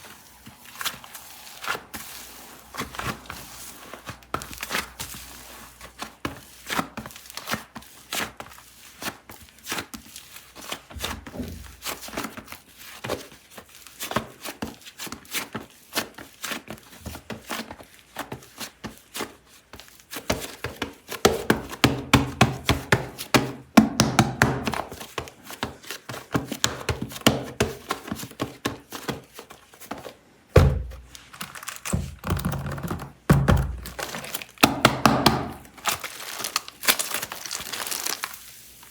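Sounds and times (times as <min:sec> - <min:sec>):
heavy thud: 0:30.6 - 0:31.1
plastic packaging crinkling: 0:30.7 - 0:38.9.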